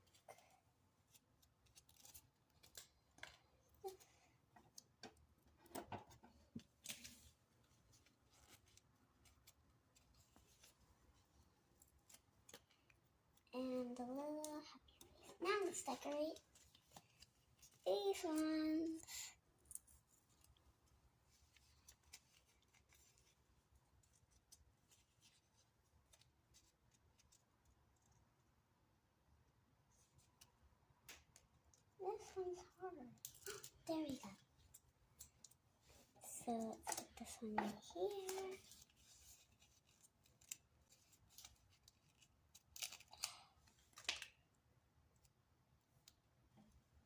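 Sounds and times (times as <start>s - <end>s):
stickers peeling and rustling: 1.0s - 5.0s, 30.0s - 44.5s.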